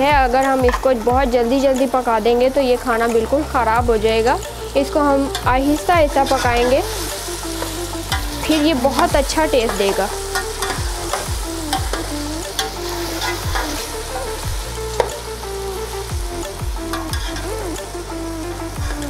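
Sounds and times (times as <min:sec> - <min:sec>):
food sizzling in oil: 0:00.0 - 0:19.0.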